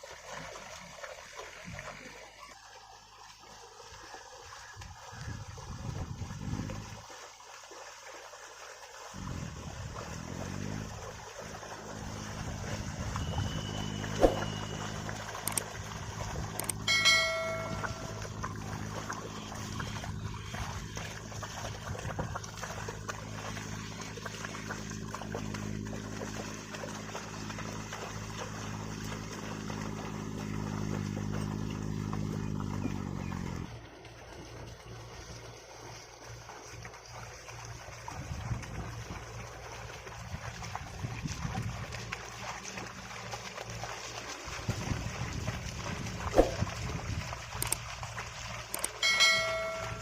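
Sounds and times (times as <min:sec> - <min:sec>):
low machine hum: 0:09.1 - 0:50.0
brief high-pitched note: 0:13.2 - 0:14.9, 0:16.9 - 0:18.3.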